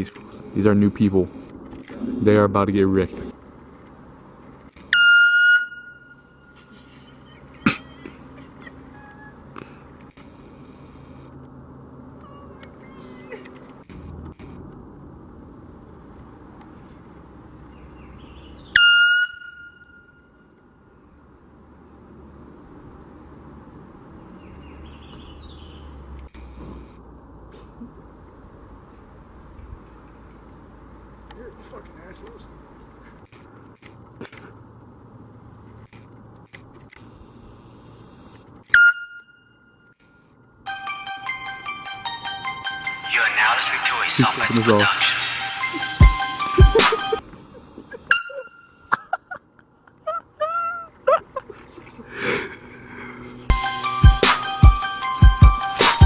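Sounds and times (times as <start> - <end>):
steady background noise: 0.0 - 56.0
air horn blast: 4.9 - 6.3, 18.8 - 20.2, 38.7 - 39.4
loud high-pitched ring: 38.8 - 39.9, 53.5 - 56.0.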